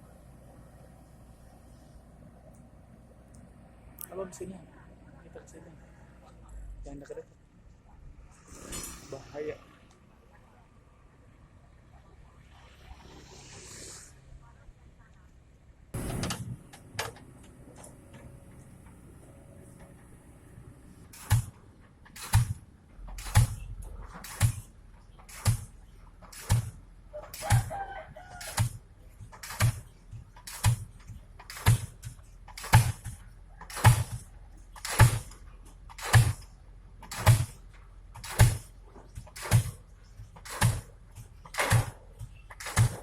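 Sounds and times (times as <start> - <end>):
low engine hum: 0.0 - 8.5, 9.6 - 43.0
pile hammer impacts: 21.1 - 27.7, 28.4 - 43.0.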